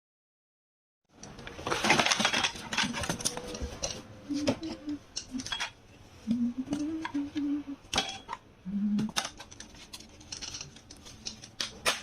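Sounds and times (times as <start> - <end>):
scrap metal parts clinking: 1.6 - 4.0, 9.2 - 12.0.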